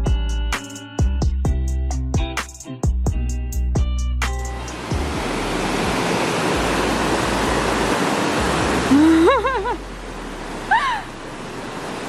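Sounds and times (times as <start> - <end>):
waterfall rushing: 4.6 - 12.0.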